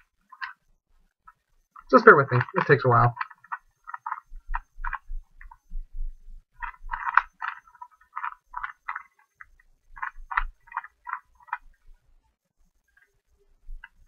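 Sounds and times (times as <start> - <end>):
puzzle cube clicking: 0.3 - 0.6, 1.8 - 5.7, 6.6 - 11.8.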